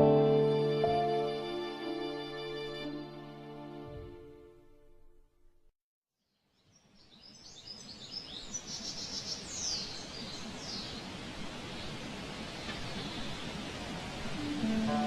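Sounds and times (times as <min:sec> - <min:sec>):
background music: 0:00.0 - 0:05.3, 0:14.4 - 0:15.0
birds chirping: 0:06.7 - 0:13.6.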